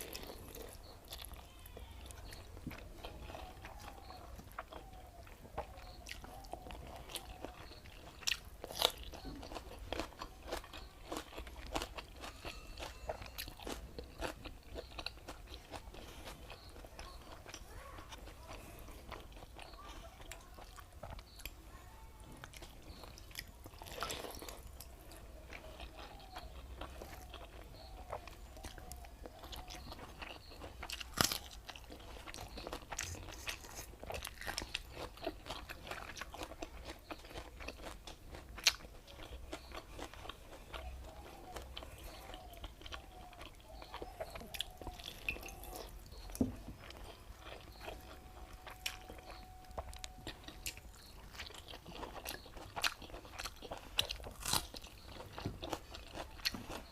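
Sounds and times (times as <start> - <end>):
person chewing food: 0.0 - 56.9.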